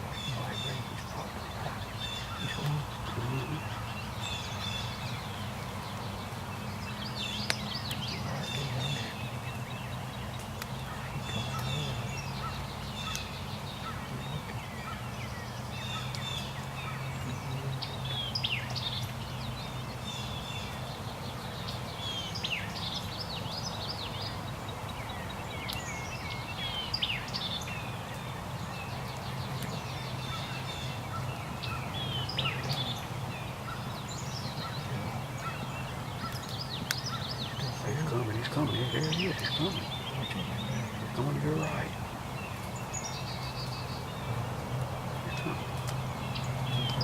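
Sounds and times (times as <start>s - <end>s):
songbirds chirping: 0.0s - 47.0s.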